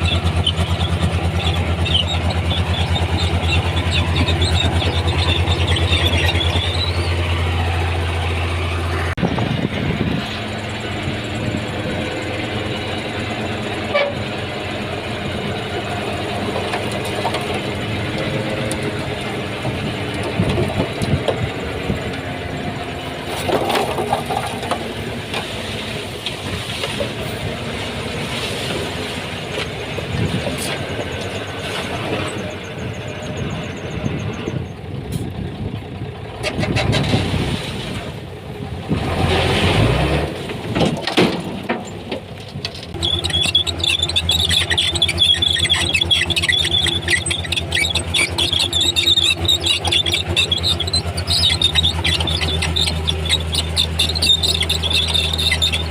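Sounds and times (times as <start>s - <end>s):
diesel machinery engines: 0.0s - 55.9s
metallic clanks and rattles: 23.2s - 25.5s, 40.5s - 55.9s.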